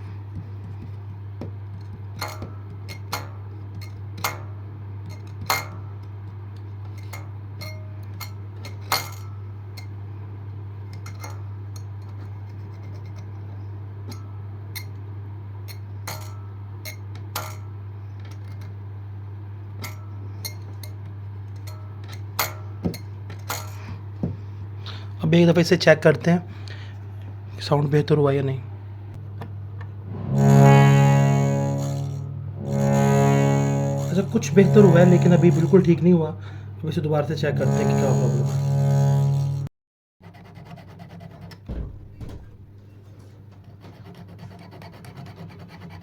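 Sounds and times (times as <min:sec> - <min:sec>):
low hum: 0:28.8 - 0:39.7.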